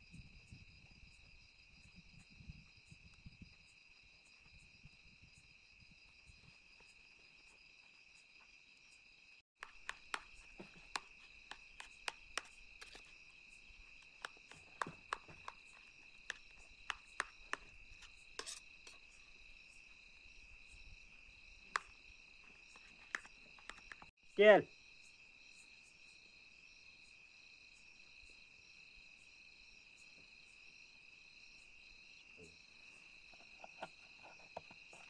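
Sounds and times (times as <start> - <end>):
crickets chirring: 0.0 - 35.0
sharp taps and knocks: 9.6 - 13.1, 14.0 - 18.6.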